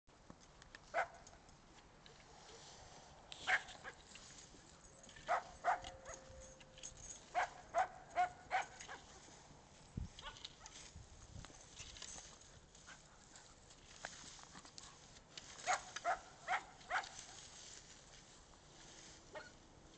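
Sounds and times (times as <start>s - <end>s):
dog barking: 0.9s - 1.2s, 3.4s - 4.0s, 5.3s - 6.3s, 7.3s - 9.1s, 15.6s - 17.2s, 19.3s - 19.6s.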